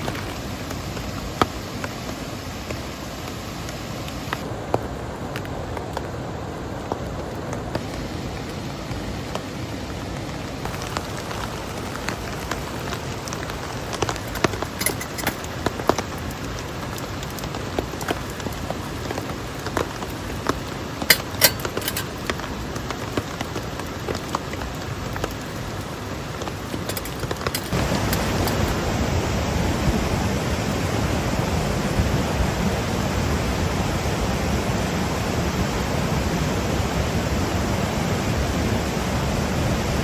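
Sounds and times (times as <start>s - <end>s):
steady rain hiss: 0.0s - 40.0s
sharp raindrop ticks: 6.8s - 29.0s.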